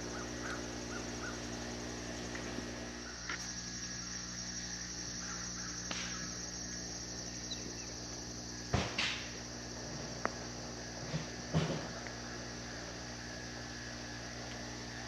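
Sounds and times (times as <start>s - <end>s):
high-pitched insect drone: 0.0s - 15.0s
low steady hum: 0.0s - 15.0s
sharp knocks and thumps: 8.7s - 9.3s, 11.0s - 12.0s.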